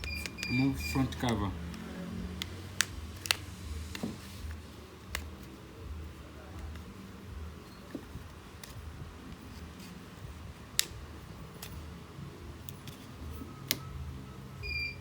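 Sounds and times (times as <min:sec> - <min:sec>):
plastic phone cover snapping: 0:02.4 - 0:04.0, 0:10.7 - 0:11.0.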